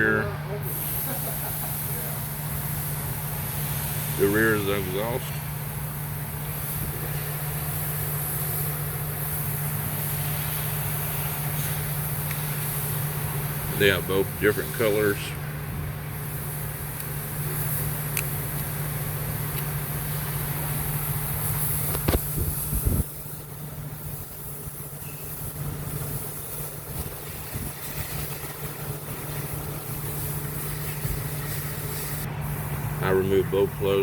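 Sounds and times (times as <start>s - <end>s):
low mechanical hum: 0.0s - 34.0s.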